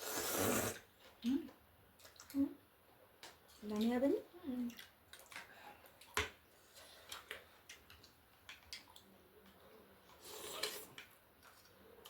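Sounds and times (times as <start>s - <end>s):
person eating: 0.0s - 1.2s, 4.6s - 12.0s
wet mouth sounds: 0.0s - 2.4s, 10.1s - 11.8s.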